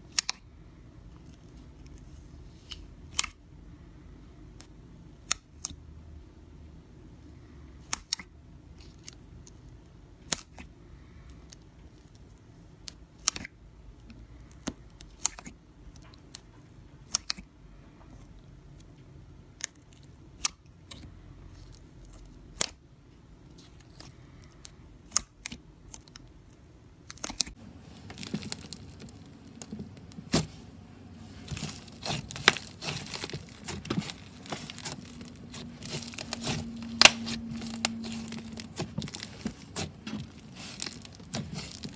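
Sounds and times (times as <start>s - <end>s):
slime crackling and crinkling: 7.8s - 17.5s, 23.4s - 41.9s.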